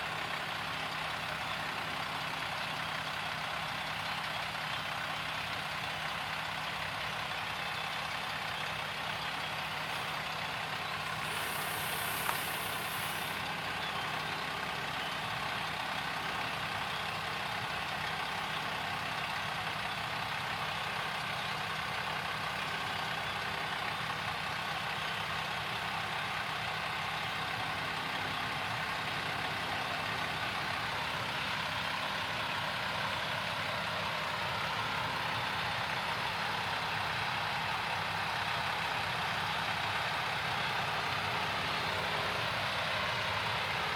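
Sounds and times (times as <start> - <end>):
combine harvester running: 0.0 - 43.9
short hiss: 11.2 - 13.4.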